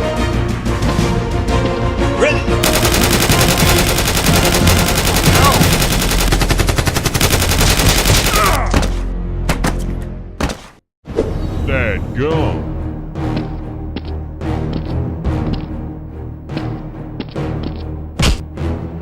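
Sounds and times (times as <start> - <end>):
action music: 0.0 - 9.6, 11.2 - 19.0
rapid automatic gunfire: 2.6 - 8.6.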